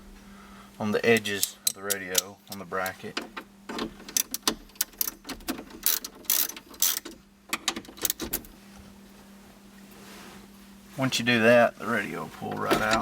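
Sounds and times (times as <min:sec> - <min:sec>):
socket ratchet clicking: 0:01.1 - 0:03.0, 0:04.1 - 0:08.4.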